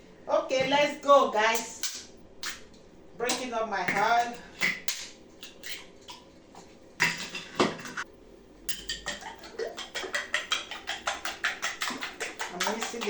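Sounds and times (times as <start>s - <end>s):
eggs being beaten in bowl: 8.7s - 13.0s
utensil knocking on bowl: 9.9s - 13.0s.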